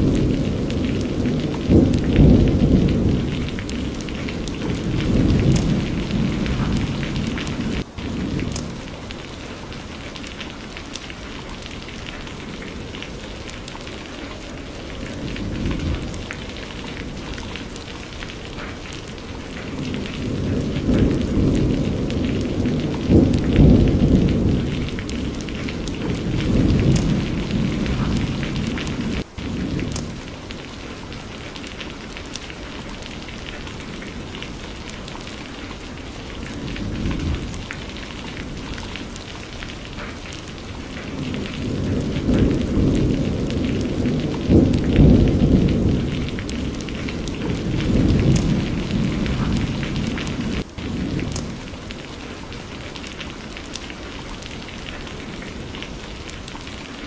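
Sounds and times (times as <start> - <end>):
steady rain falling: 0.0 - 57.0
thunder rumbling: 0.0 - 57.0.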